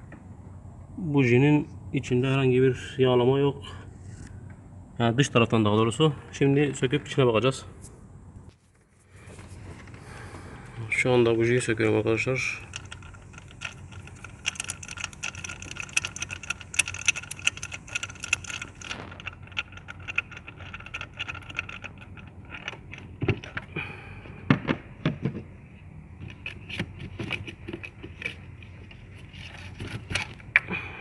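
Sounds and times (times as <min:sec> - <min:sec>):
ratchet clicking: 0:12.6 - 0:22.8.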